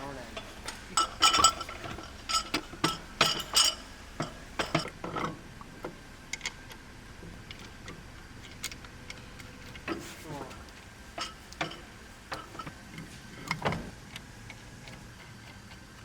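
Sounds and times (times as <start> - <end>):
metal tools clinking: 0.2 - 4.9.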